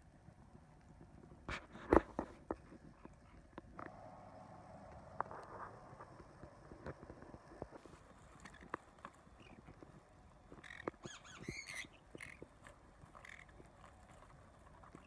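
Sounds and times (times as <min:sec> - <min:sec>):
bird chirping: 0:08.4 - 0:15.0.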